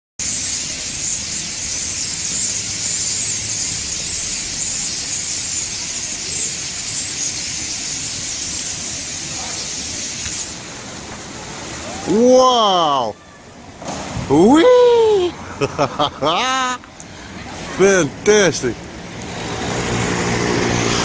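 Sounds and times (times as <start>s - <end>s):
flock of birds chirping: 0.2s - 13.8s.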